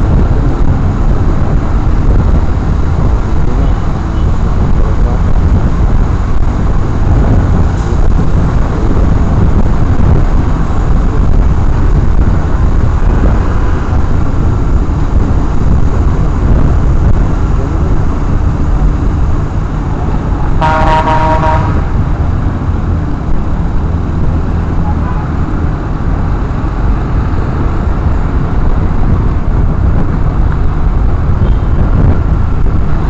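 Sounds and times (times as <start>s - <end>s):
wind and road noise: 0.0s - 33.0s
vehicle horn: 20.6s - 22.0s.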